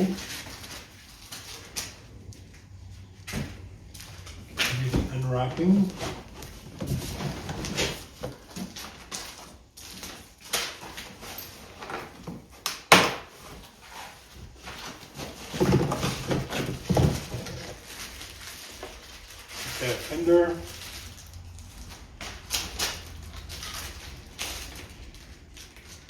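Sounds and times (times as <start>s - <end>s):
wrapping crinkled by hand: 17.2s - 26.0s.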